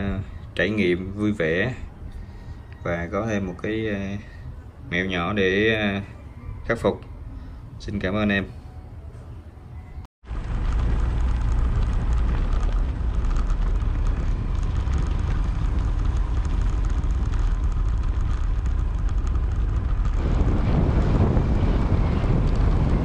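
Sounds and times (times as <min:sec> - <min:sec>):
moving vehicle rumble: 0:00.0 - 0:23.0
wind buffeting microphone: 0:10.2 - 0:23.0.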